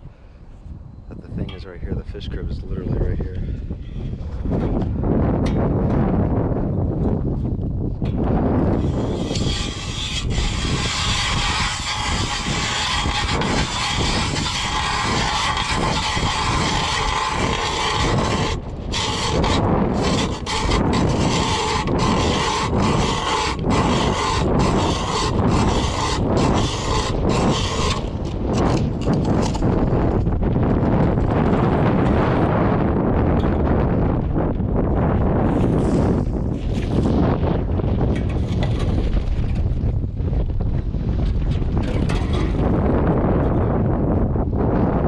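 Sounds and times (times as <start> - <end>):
ice auger drilling: 8.7 - 29.7.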